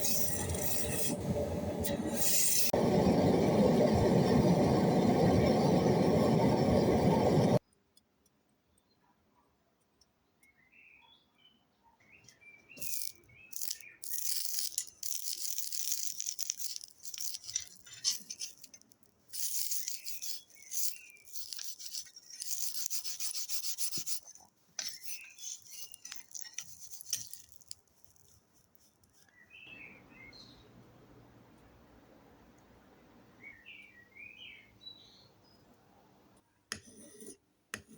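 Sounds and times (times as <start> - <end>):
abrasive scraping steel blade: 0.0 - 2.8
birds chirping faintly: 29.0 - 36.4.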